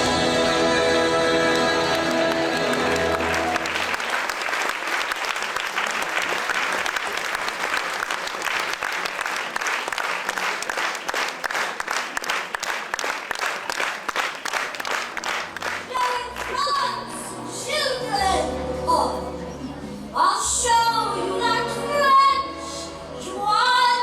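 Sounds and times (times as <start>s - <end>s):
music: 0.0s - 4.2s, 14.5s - 24.0s
audience applauding: 0.6s - 17.0s.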